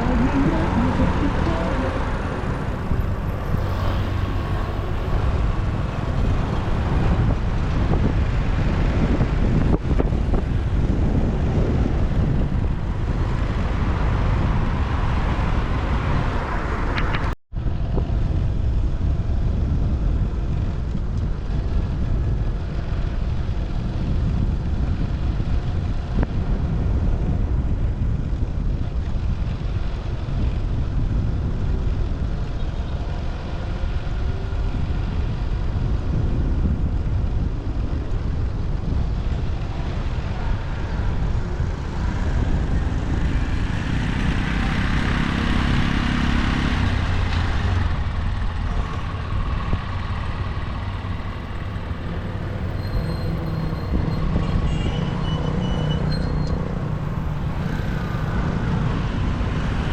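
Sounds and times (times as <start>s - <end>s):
wind rumble on microphone: 0.0s - 59.9s
motorcycle engine: 38.5s - 59.9s.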